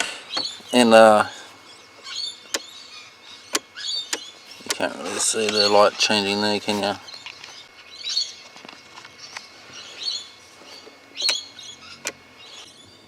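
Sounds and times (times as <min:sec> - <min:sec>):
birds chirping: 0:00.0 - 0:13.0
sharp clicks: 0:02.5 - 0:02.7, 0:03.5 - 0:05.7.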